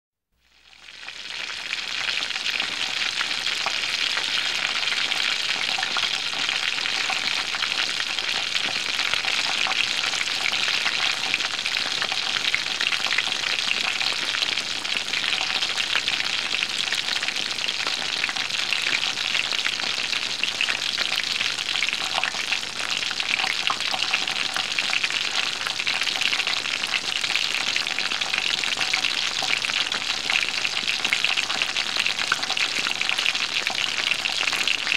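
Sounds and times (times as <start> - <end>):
food sizzling in a pan: 0.4 - 34.9.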